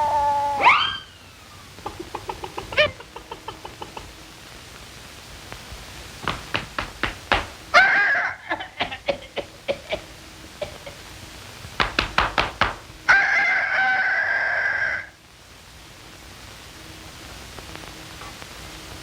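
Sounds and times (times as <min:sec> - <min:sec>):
pitched toot: 0:00.0 - 0:01.3
sharp knocks: 0:06.2 - 0:07.6, 0:11.8 - 0:12.9.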